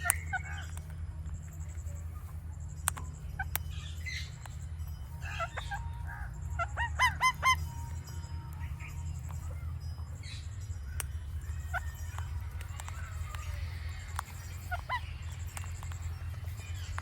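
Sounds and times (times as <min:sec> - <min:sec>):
parrot clicking and chattering: 0:00.0 - 0:17.0
steady low hum: 0:00.0 - 0:17.0
loud parrot calls: 0:05.2 - 0:07.9, 0:14.3 - 0:15.6.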